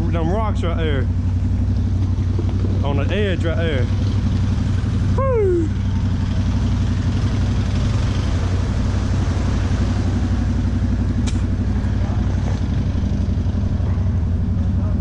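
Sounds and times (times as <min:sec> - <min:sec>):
atv engine idling: 0:00.0 - 0:15.0
sharp click: 0:11.2 - 0:11.4.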